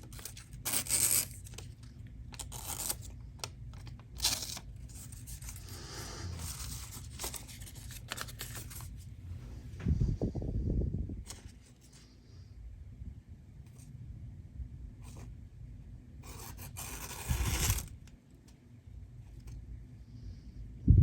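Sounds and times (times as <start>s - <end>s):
paper rustling: 6.4s - 9.1s, 16.3s - 18.0s
blade slicing through paper: 16.2s - 18.0s.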